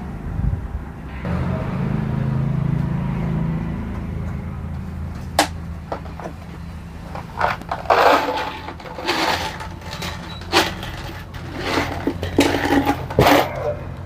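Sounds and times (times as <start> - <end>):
hands working on wooden cabinet: 5.2 - 13.8.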